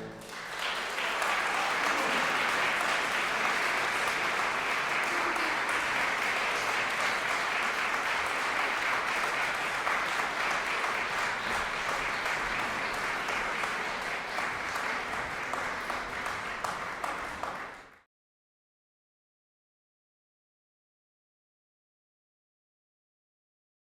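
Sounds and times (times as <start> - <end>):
audience applauding: 0.0 - 18.1.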